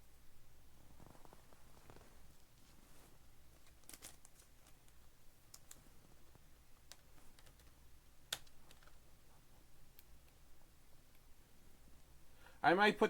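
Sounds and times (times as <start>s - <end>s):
faint clicks and taps: 3.6s - 11.3s.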